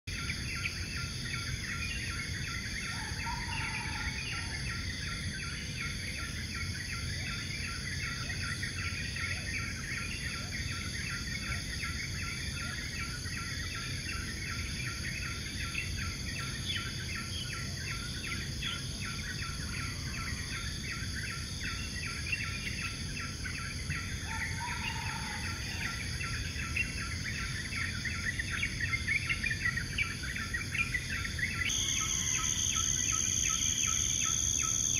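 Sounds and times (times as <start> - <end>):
insects chirping: 0.1 - 34.9
continuous high buzz: 26.3 - 34.9.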